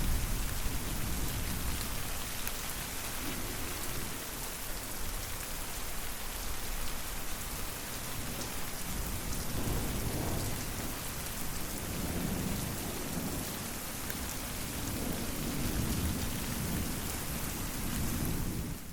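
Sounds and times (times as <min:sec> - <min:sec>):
low rolling thunder: 0:00.0 - 0:02.0, 0:09.0 - 0:11.0, 0:11.6 - 0:13.6, 0:14.6 - 0:17.4
steady rain falling: 0:00.0 - 0:18.9.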